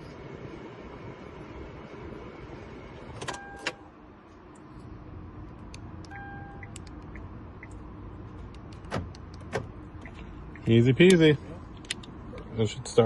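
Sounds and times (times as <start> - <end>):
steady background hum: 0.0 - 13.0
short electronic beeps: 6.1 - 6.8.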